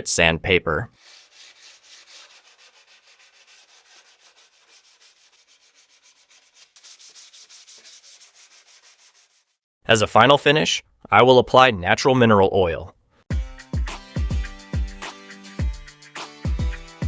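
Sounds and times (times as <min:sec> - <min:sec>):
hand sanding wood: 0:00.9 - 0:09.6.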